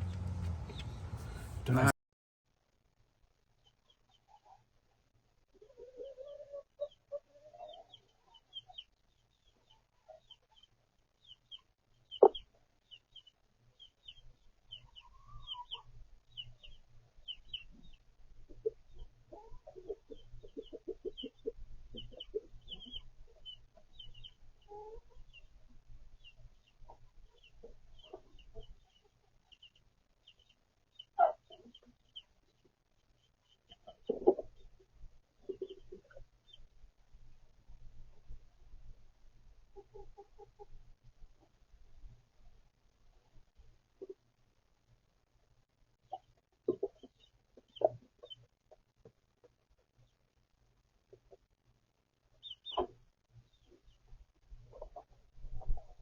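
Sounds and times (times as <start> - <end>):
chicks peeping: 0.0 - 1.9, 5.6 - 36.7, 46.1 - 48.8, 52.4 - 54.1, 54.7 - 56.0
hens clucking: 0.0 - 1.9, 17.9 - 25.4, 33.7 - 34.8, 35.4 - 36.2, 46.1 - 48.8, 54.7 - 56.0.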